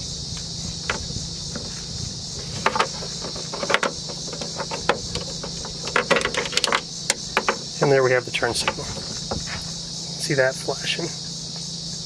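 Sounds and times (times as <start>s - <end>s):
steady high hiss: 0.0s - 12.0s
plastic clicks and knocks: 0.9s - 1.8s, 2.5s - 7.7s, 8.4s - 9.6s.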